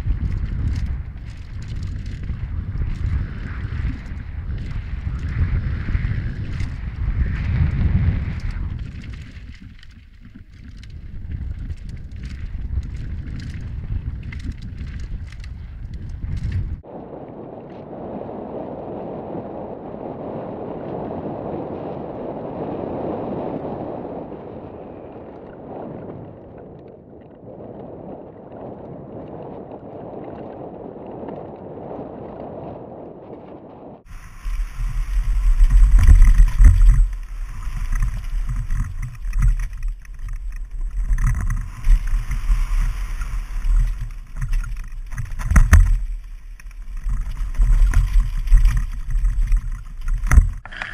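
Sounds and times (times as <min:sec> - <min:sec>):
bike rumbling and knocking: 0:00.0 - 0:16.9, 0:34.1 - 0:50.9
wind and tyre noise: 0:00.0 - 0:50.9
wind buffeting on microphone: 0:00.0 - 0:50.9.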